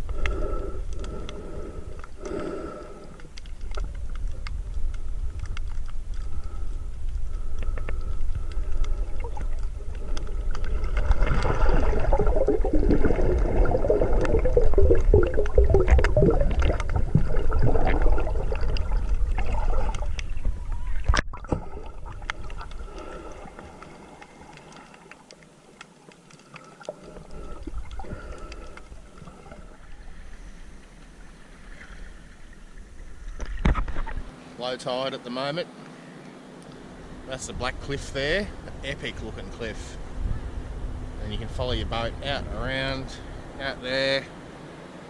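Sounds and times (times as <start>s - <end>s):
water gurgling and washing: 8.2s - 34.3s.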